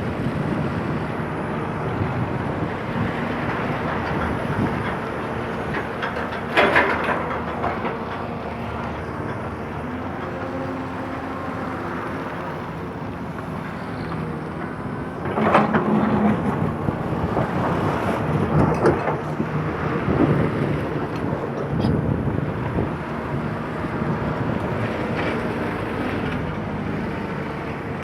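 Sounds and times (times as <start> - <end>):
excavator diesel engine rumbling: 0.0 - 28.0.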